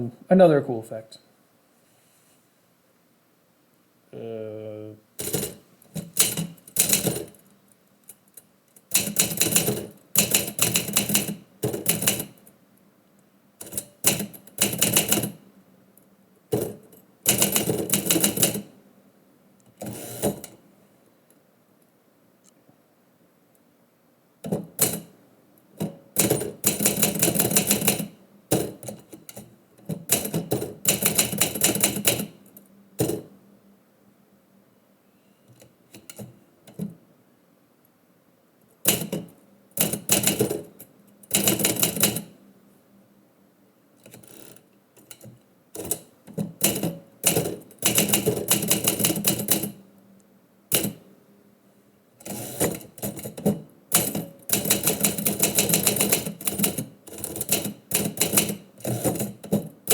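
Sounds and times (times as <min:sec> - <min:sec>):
typewriter keys striking: 0:05.2 - 0:07.4, 0:08.9 - 0:12.4, 0:29.9 - 0:32.3, 0:38.9 - 0:40.5, 0:52.6 - 0:59.9.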